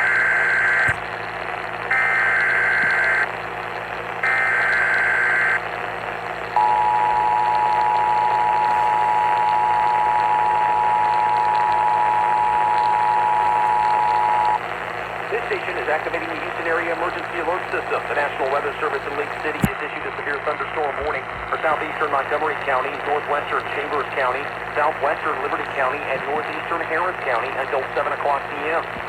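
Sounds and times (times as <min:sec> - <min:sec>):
radio static hiss: 0:00.0 - 0:29.0
two-tone attention signal: 0:06.6 - 0:14.6.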